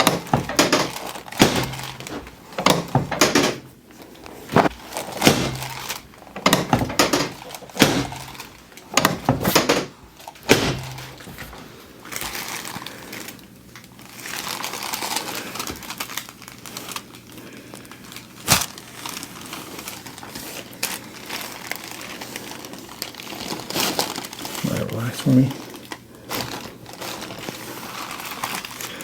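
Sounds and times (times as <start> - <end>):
sharp knocks: 0.0 - 3.7, 4.5 - 11.6
rustling and crinkling on table: 0.0 - 29.0.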